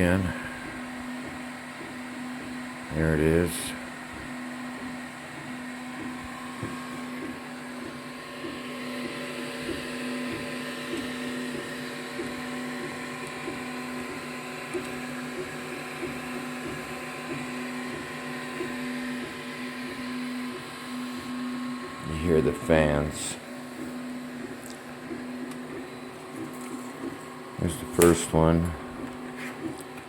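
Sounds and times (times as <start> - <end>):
cooling fans humming: 0.0 - 30.0.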